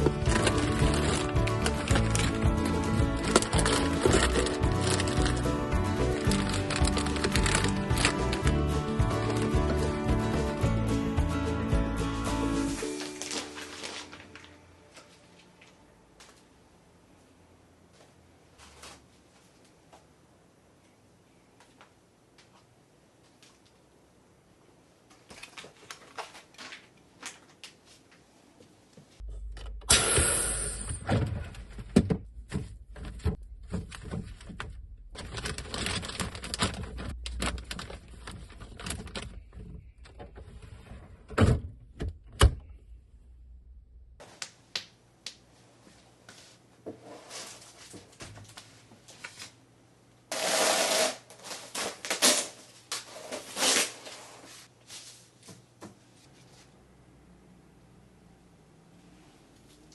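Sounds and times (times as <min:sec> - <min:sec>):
packaging rustling: 0:00.0 - 0:05.5, 0:06.1 - 0:08.6, 0:12.7 - 0:14.6, 0:35.2 - 0:39.5
low hum: 0:29.2 - 0:41.2.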